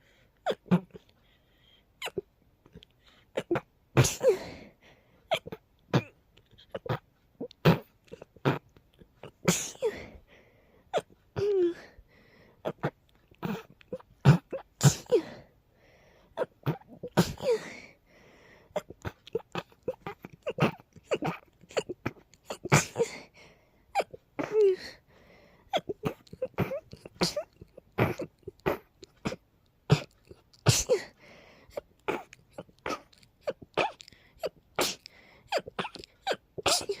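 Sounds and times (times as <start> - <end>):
person sneezing: 3.4 - 4.7, 9.2 - 10.2, 12.6 - 15.5, 16.4 - 17.8, 18.8 - 23.2, 25.7 - 37.0.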